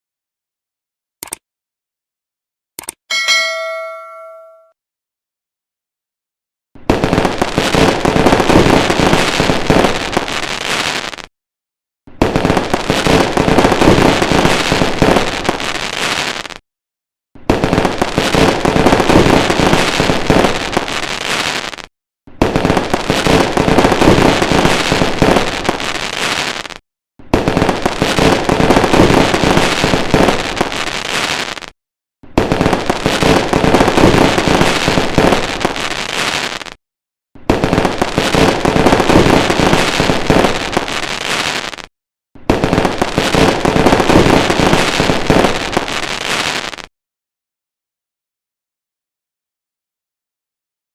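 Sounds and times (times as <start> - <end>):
fireworks bangs and crackling: 6.9 - 11.3, 12.1 - 16.6, 17.4 - 31.7, 32.3 - 36.8, 37.4 - 46.9.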